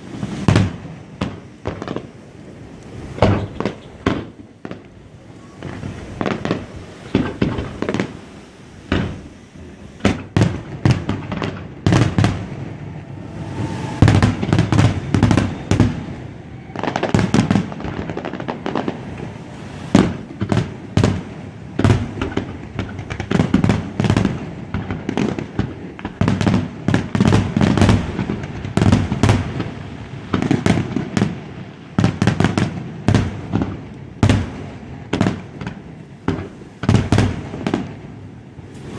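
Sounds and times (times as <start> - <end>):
fireworks bursting and crackling: 0.0 - 38.9
rumbling echoes: 11.6 - 20.2.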